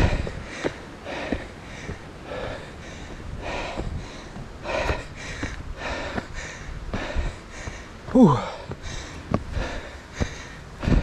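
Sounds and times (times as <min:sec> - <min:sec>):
man breathing heavily: 0:00.0 - 0:11.0.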